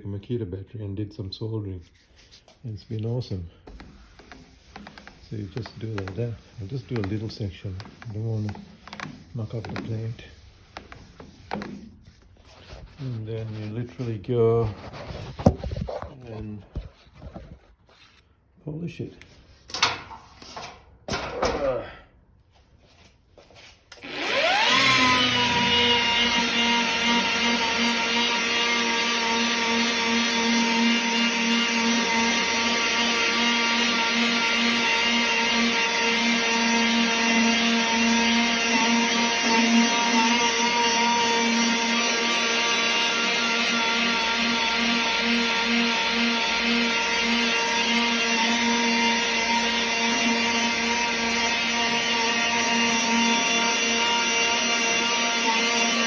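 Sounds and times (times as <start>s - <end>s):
cordless polisher running: 3.7s - 11.9s, 23.9s - 56.0s.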